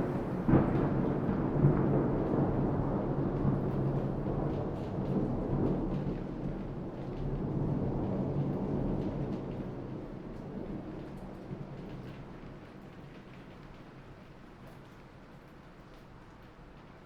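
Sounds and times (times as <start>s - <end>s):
rolling thunder: 0.0s - 10.0s.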